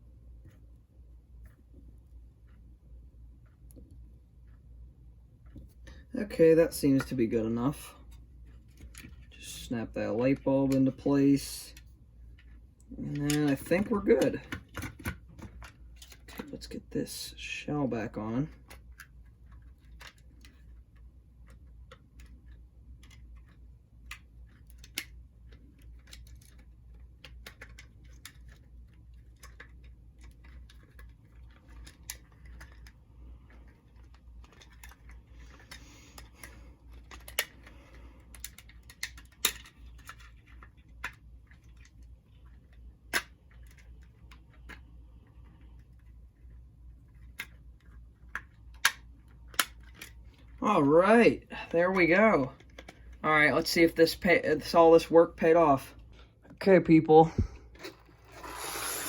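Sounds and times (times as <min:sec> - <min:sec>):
steady low hum: 0:00.0 - 0:59.0
sharp plastic snaps: 0:21.4 - 0:28.6, 0:34.1 - 0:41.9, 0:43.0 - 0:44.8, 0:47.2 - 0:50.4.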